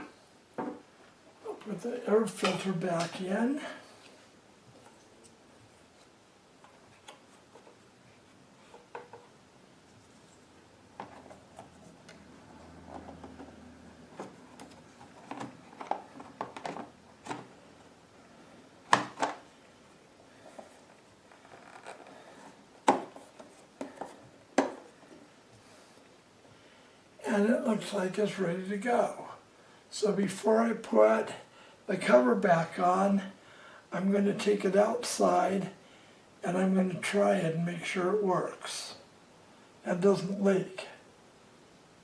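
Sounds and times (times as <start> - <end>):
clicks and taps handling plastic parts: 8.7 - 9.3, 12.9 - 17.5.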